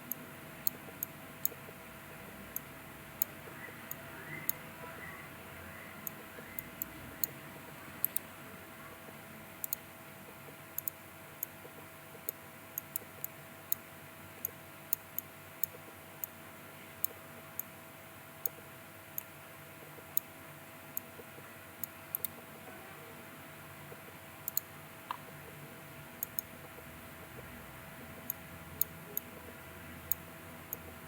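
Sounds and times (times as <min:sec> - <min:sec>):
faint electrical hum: 0:00.0 - 0:31.0
computer mouse clicking: 0:08.0 - 0:08.3, 0:09.6 - 0:13.8, 0:21.0 - 0:22.4, 0:24.4 - 0:25.4, 0:26.2 - 0:31.0.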